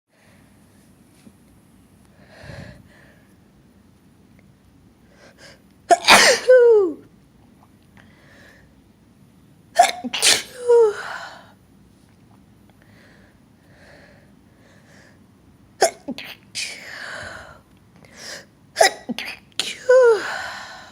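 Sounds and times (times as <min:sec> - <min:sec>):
person sneezing: 0:05.9 - 0:07.0, 0:09.8 - 0:11.2.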